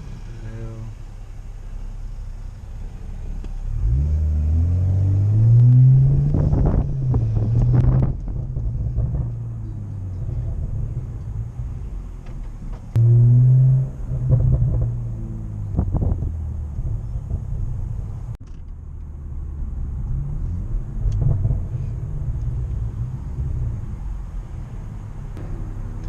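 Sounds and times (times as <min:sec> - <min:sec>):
car engine pulling away: 0:00.0 - 0:26.0
exhaust cracks: 0:03.2 - 0:26.0
engine revving: 0:03.6 - 0:11.9, 0:12.9 - 0:18.3.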